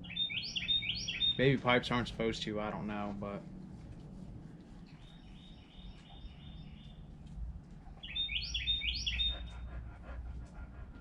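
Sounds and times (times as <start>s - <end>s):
songbird chirping: 0.0s - 3.0s, 4.6s - 9.8s.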